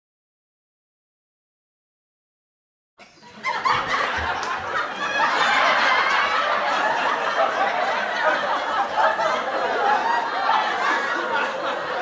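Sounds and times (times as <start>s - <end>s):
people laughing and snickering: 3.0s - 12.0s.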